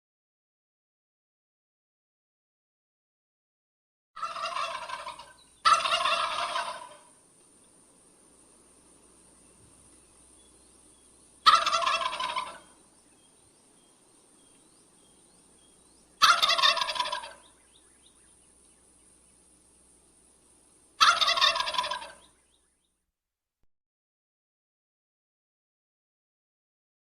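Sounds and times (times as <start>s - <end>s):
turkey gobbling: 4.2s - 7.2s, 11.4s - 12.8s, 16.2s - 18.2s, 21.0s - 22.4s.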